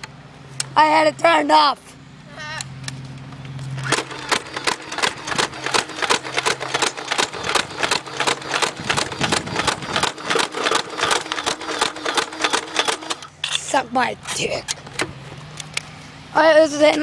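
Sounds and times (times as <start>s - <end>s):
faint motor hum: 0.0s - 17.0s
toy blaster firing clicks: 3.8s - 13.3s.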